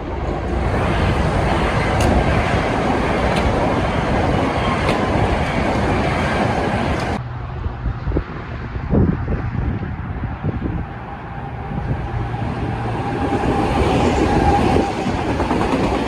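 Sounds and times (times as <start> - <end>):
train wheels rumbling on rail: 0.0 - 7.6, 9.0 - 16.0
faint rail clicks: 1.9 - 2.3.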